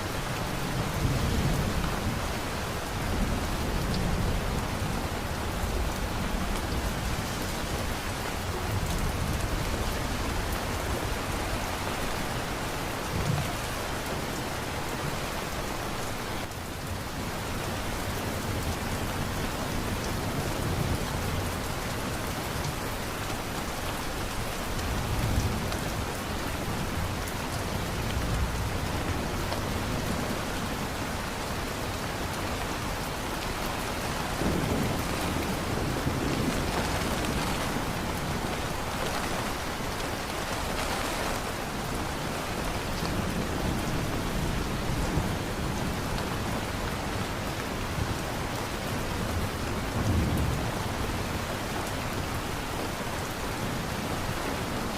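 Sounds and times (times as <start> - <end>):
heavy rain falling: 0.0 - 54.9
thunder rumbling: 34.0 - 46.0.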